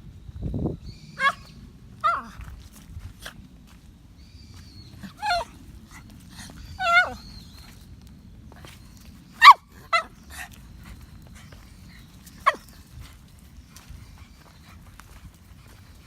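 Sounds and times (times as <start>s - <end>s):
small dog whimpering: 1.2s - 2.4s, 5.0s - 5.6s, 6.3s - 7.4s.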